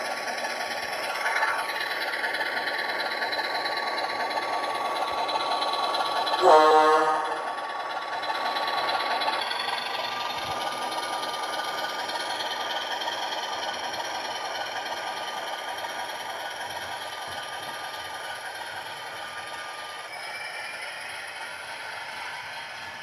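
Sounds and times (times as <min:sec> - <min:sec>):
model locomotive diesel engine sound: 0:00.0 - 0:23.0.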